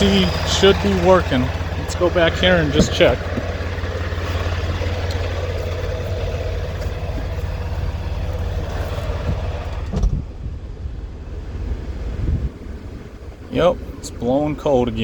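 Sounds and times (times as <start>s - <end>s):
diesel truck engine idling: 0.0s - 15.0s
thump: 9.9s - 10.2s.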